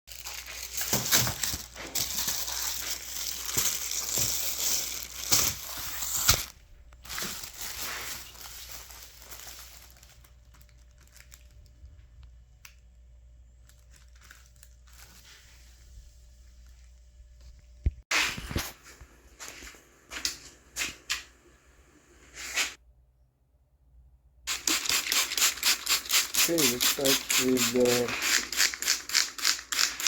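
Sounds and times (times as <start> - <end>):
sheet crinkling and crumpling: 0.1 - 12.0, 13.6 - 15.9.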